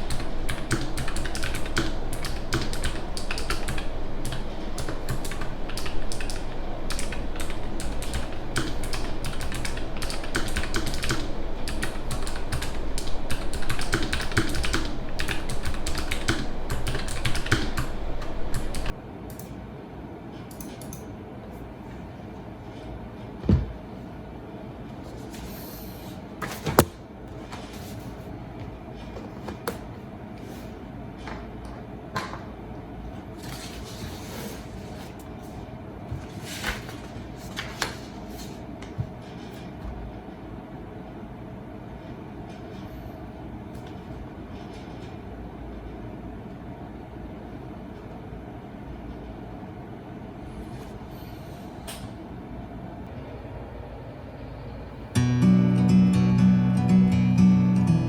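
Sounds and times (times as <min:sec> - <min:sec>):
mechanical keyboard typing: 0:00.0 - 0:19.5.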